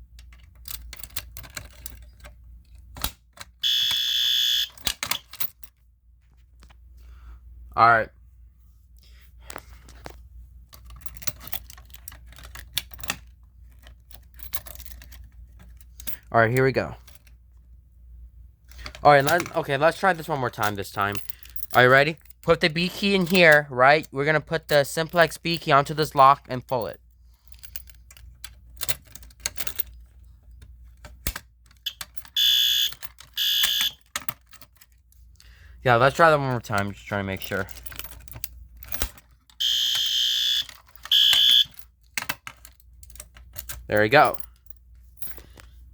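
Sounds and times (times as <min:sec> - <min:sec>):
keys jangling: 0:00.2 - 0:03.6, 0:10.7 - 0:16.3, 0:20.3 - 0:23.6, 0:24.6 - 0:35.2, 0:37.3 - 0:45.8
metallic clicks of key in lock: 0:03.0 - 0:03.6, 0:04.7 - 0:05.6
fire alarm horn blasts: 0:03.6 - 0:04.8, 0:31.9 - 0:34.0, 0:39.6 - 0:41.8.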